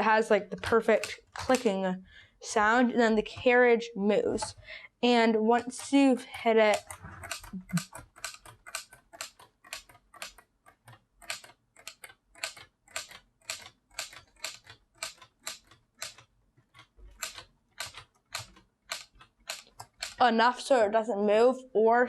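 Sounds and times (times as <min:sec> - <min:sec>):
plastic typewriter keys clicking: 0:00.7 - 0:01.8, 0:05.6 - 0:20.2.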